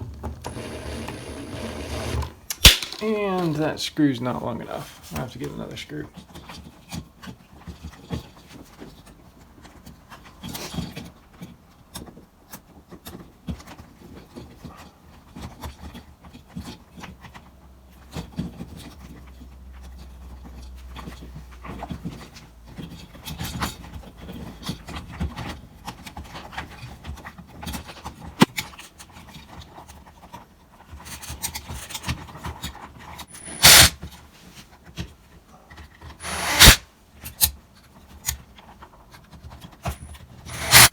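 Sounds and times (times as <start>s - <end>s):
tools clicking and knocking: 2.5s - 3.2s, 33.3s - 34.0s, 36.2s - 36.8s, 40.5s - 40.9s.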